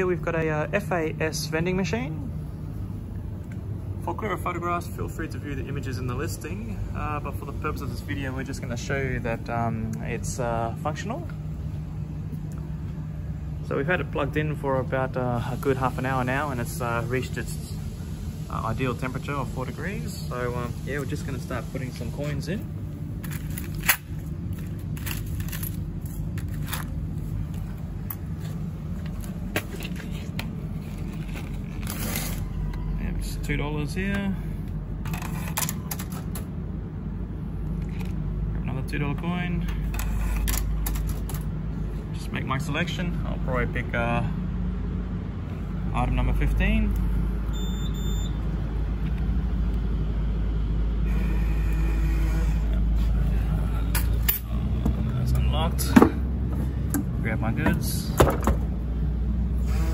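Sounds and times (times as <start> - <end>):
vending machine humming: 0.0 - 59.9
keypad beeps: 47.5 - 48.4.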